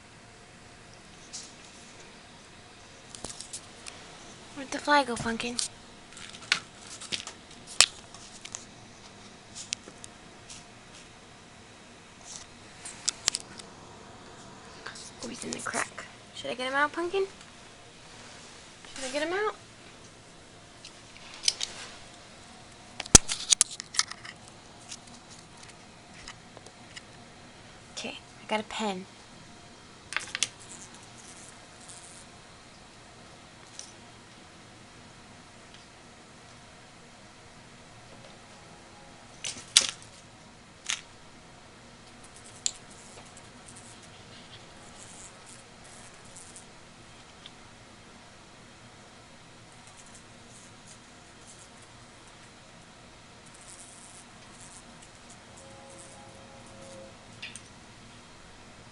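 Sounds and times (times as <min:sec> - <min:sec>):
light scratching and rustling: 0:21.0 - 0:22.2.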